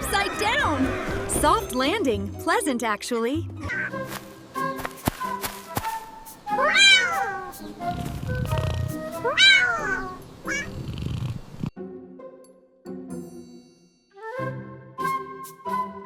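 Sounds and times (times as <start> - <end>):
background music: 0.0 - 10.7, 11.7 - 16.0
cartoon cat meowing: 3.7 - 4.0, 6.5 - 7.6, 9.2 - 10.8.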